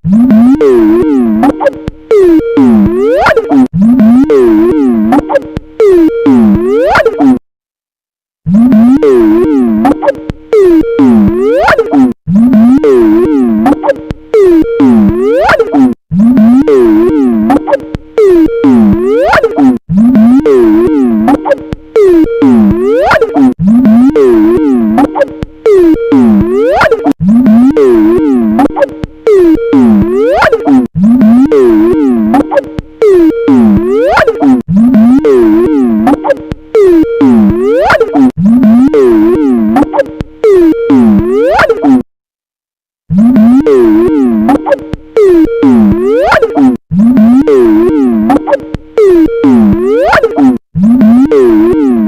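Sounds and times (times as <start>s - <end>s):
warped ringtone: 0.1s - 7.4s, 8.5s - 42.0s, 43.2s - 52.0s.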